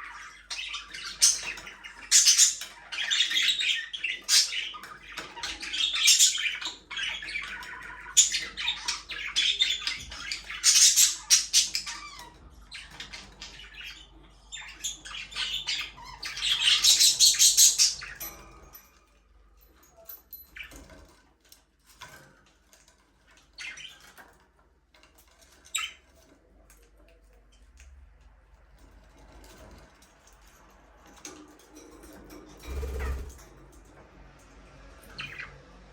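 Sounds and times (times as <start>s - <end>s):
budgerigars chattering and squawking: 0.0s - 18.4s, 32.6s - 33.4s.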